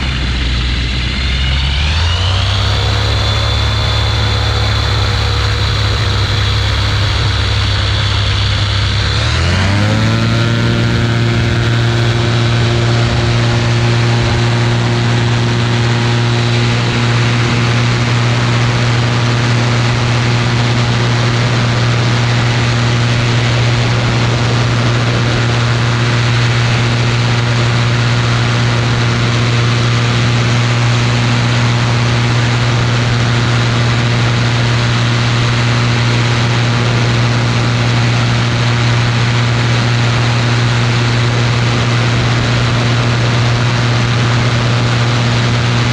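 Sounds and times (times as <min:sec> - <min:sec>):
aircraft engine and propeller drone: 0:00.0 - 0:45.9.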